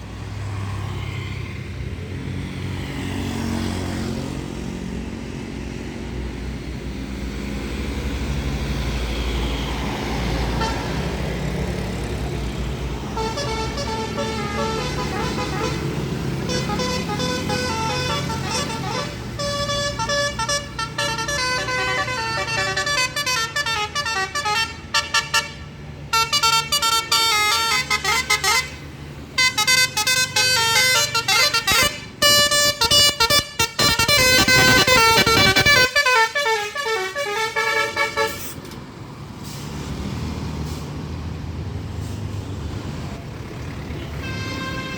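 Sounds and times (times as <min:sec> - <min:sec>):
bus musical horn tooting: 0:10.4 - 0:11.2, 0:13.0 - 0:38.7, 0:44.0 - 0:44.9.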